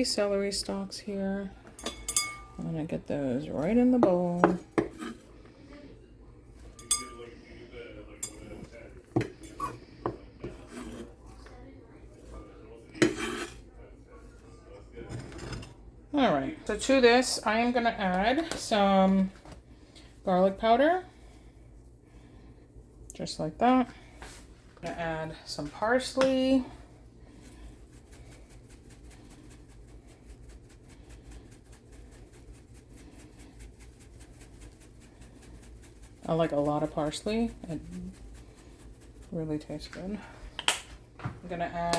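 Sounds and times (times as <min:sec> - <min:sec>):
low steady hum: 0:00.0 - 0:41.9
knife scraping cutting board: 0:04.4 - 0:05.3, 0:10.4 - 0:11.2, 0:13.0 - 0:13.6
knife knocking bowl: 0:06.8 - 0:07.3.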